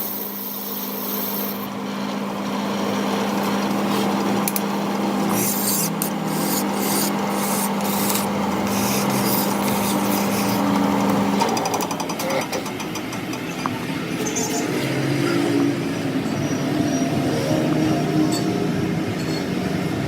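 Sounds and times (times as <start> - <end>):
workshop machine humming: 0.0 - 20.0
metal being filed by hand: 5.2 - 11.2.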